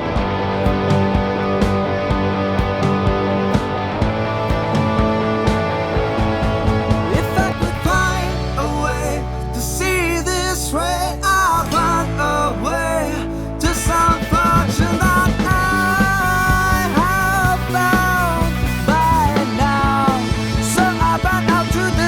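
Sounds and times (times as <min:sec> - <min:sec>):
bending lead melody: 0:00.0 - 0:22.0
rock band playing: 0:00.0 - 0:22.0.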